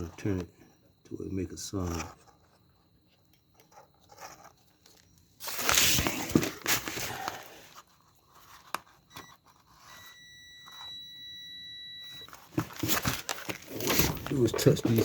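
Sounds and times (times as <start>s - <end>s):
multimeter beeping: 9.0s - 12.4s.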